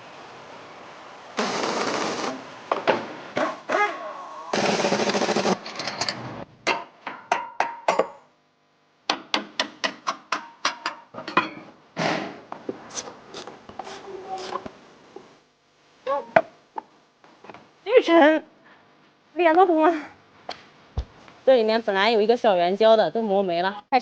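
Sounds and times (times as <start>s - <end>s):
sharp clicks and knocks: 9.1s - 11.0s.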